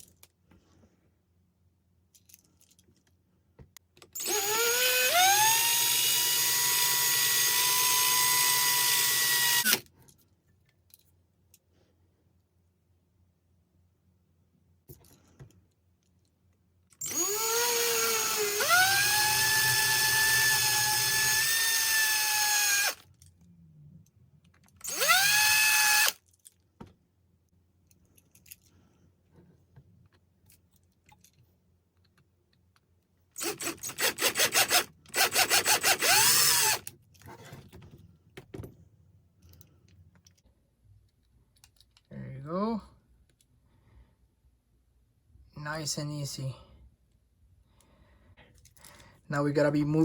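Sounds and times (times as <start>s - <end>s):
small power drill whining: 4.2s - 9.9s, 17.0s - 23.1s, 24.8s - 26.2s, 33.4s - 36.9s.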